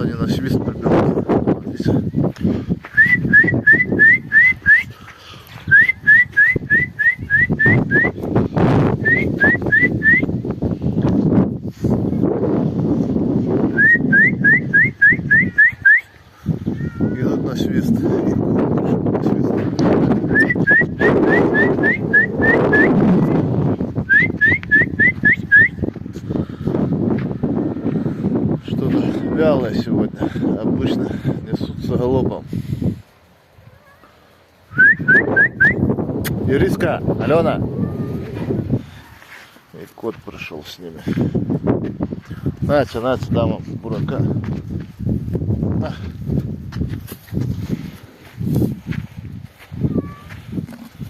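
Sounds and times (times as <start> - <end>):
person whistling: 2.9 - 5.0, 5.7 - 8.2, 9.0 - 10.3, 13.7 - 16.2, 20.3 - 23.0, 24.1 - 25.8, 34.7 - 35.9.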